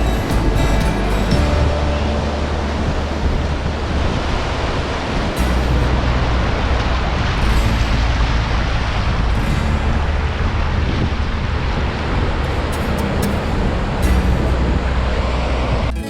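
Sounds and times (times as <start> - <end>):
surf washing on beach: 0.0 - 16.0
wind buffeting microphone: 0.0 - 16.0.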